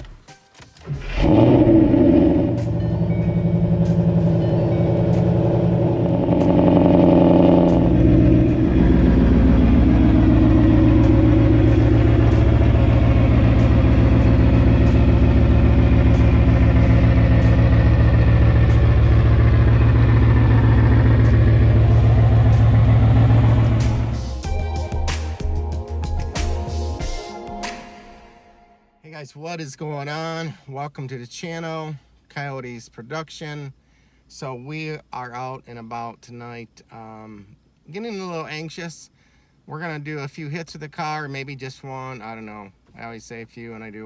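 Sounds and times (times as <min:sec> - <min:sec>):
car engine running loud: 0:00.9 - 0:24.5.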